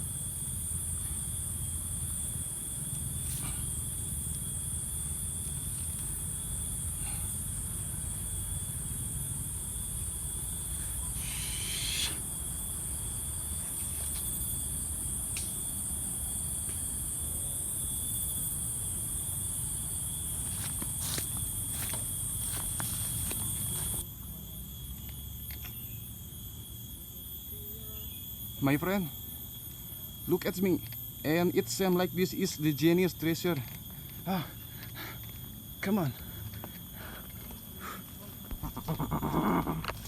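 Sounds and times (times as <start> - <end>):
insects chirping: 0.0 - 40.0
constant shrill tone: 23.8 - 38.4.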